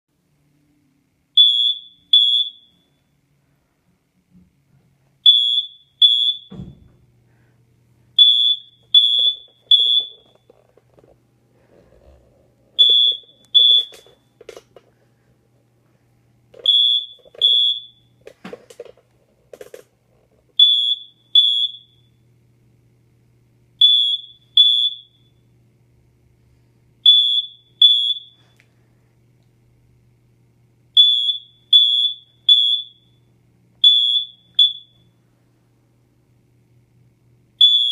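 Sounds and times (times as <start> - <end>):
smoke alarm chirping: 1.3 - 3.2, 5.2 - 6.7, 8.2 - 10.6, 12.8 - 14.3, 16.6 - 18.2, 20.6 - 22.2, 23.8 - 25.5, 27.0 - 28.5, 30.9 - 35.2, 37.6 - 37.9.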